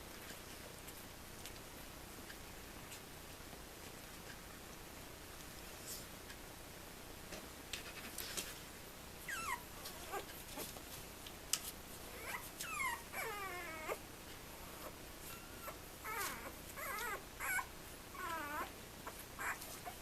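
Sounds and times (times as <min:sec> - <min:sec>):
puppy whimpering: 0:09.3 - 0:10.7, 0:12.1 - 0:14.0, 0:14.6 - 0:20.0.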